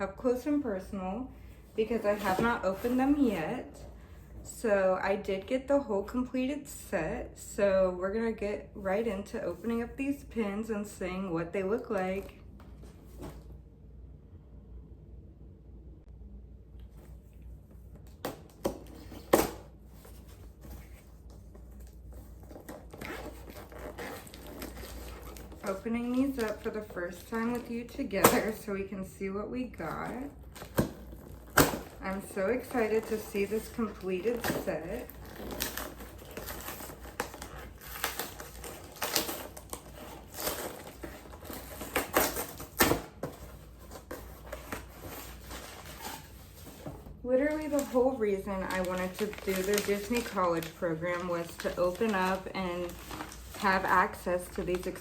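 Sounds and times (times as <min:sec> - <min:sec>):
packaging crinkling and rustling: 0:18.1 - 0:28.6, 0:29.8 - 0:55.0
packaging clicks: 0:48.6 - 0:53.6.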